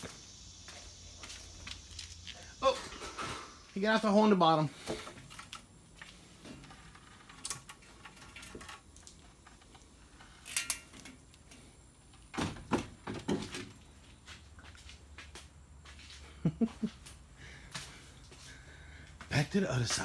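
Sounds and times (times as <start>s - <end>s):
objects knocking and clattering: 12.4s - 13.8s.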